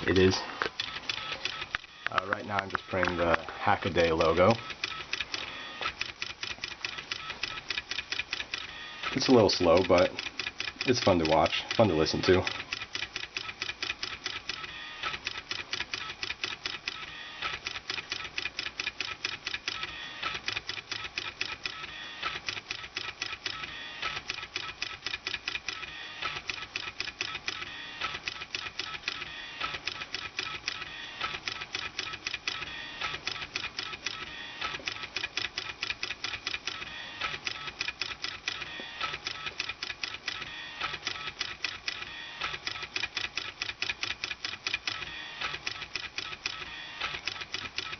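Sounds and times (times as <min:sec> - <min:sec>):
stepper motors ticking and buzzing: 0:00.1 - 0:47.9.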